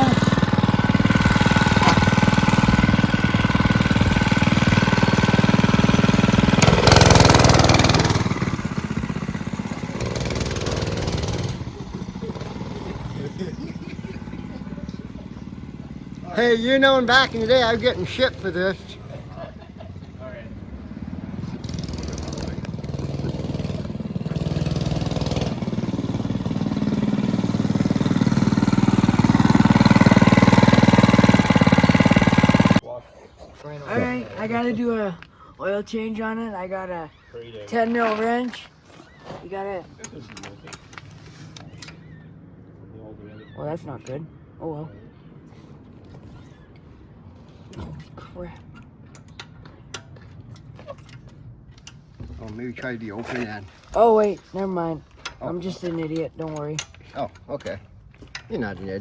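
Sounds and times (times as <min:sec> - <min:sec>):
small motorbike engine running: 0:00.0 - 0:32.8.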